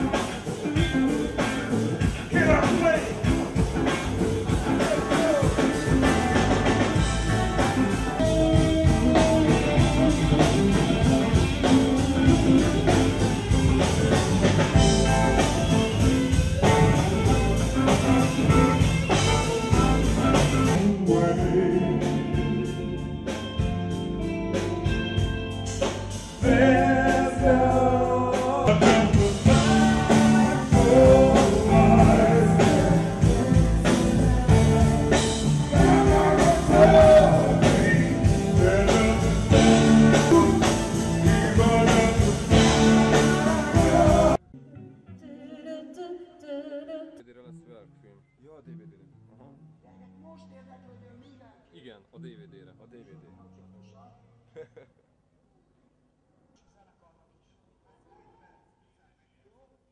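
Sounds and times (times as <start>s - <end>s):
rock band playing: 0.0s - 44.4s
person singing: 15.8s - 23.8s, 26.4s - 47.3s.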